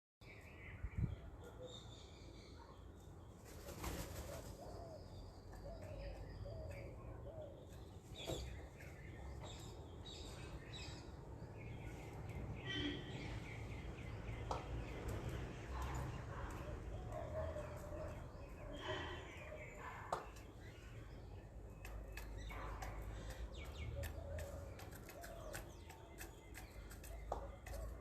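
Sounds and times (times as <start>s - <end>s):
wings flapping: 3.5s - 4.6s
birds cooing: 3.8s - 8.6s, 12.6s - 21.4s, 22.0s - 28.0s.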